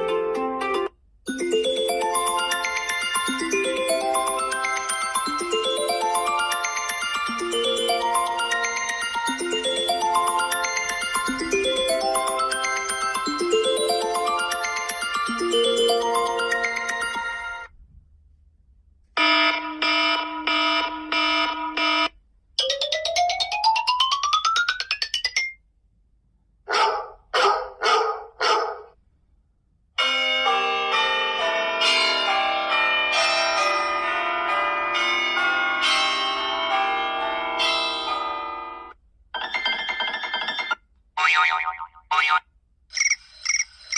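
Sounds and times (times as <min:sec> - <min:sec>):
phone ringtones: 0:01.3 - 0:17.7, 0:39.4 - 0:43.9.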